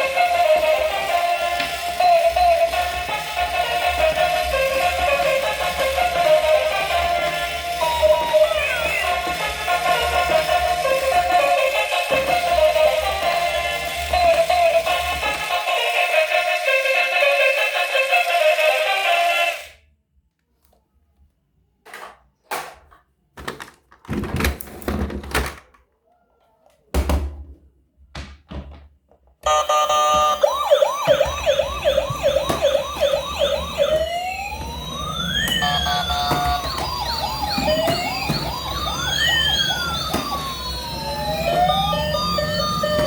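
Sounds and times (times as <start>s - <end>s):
plastic toys rattling: 0.0s - 15.7s, 21.9s - 25.8s, 34.6s - 43.0s
toy sirens wailing: 0.0s - 19.8s, 29.4s - 43.0s
steady electronic tones: 29.5s - 43.0s.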